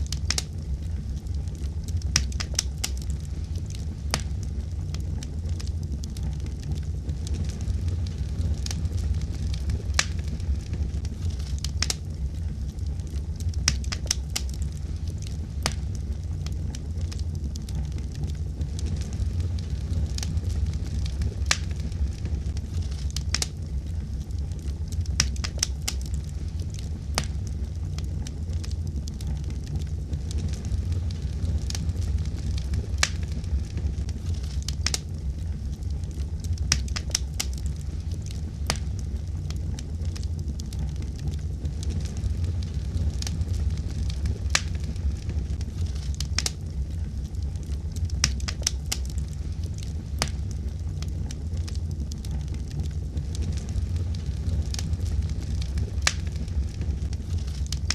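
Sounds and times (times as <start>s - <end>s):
low rumble of flame: 0.0s - 57.9s
wood fire crackling and popping: 0.0s - 57.9s.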